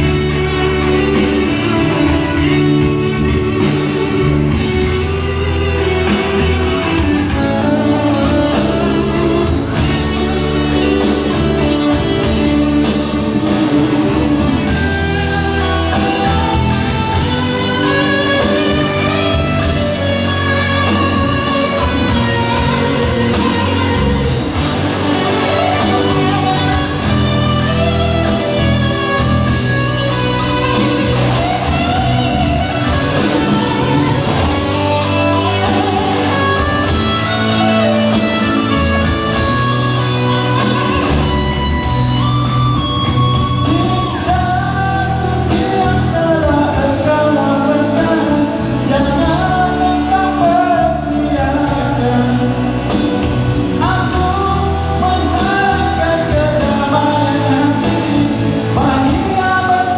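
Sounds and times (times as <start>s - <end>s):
live band with singing: 0.0s - 59.9s.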